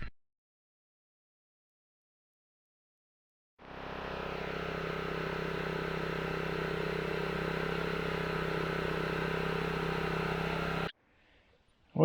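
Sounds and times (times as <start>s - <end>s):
petrol engine driving water pump: 3.6s - 10.9s.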